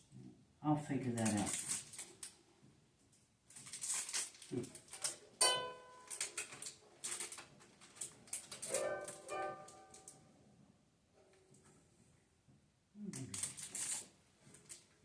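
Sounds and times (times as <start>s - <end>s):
rustling handling noise: 1.1s - 2.4s, 3.1s - 10.2s.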